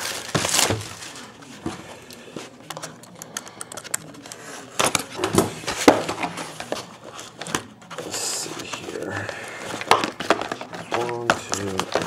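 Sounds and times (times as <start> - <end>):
card box clicks taps and rustles: 9.7 - 12.0.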